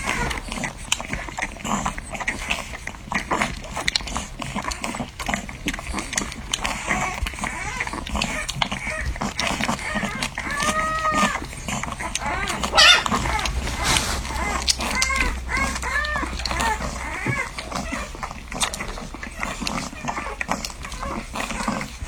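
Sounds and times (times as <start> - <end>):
puppies sucking and smacking: 0.0 - 22.0
puppy squeak: 9.8 - 21.8.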